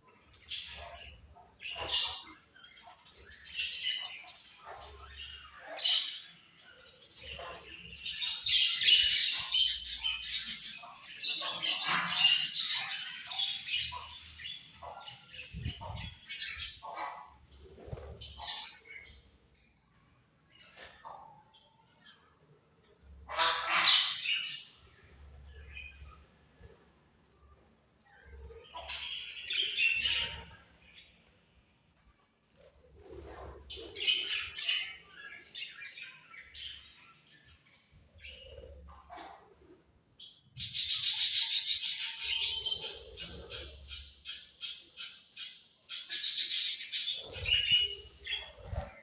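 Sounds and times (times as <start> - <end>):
budgerigars chirping and chattering: 0.4 - 19.2, 23.3 - 24.7, 40.6 - 49.0.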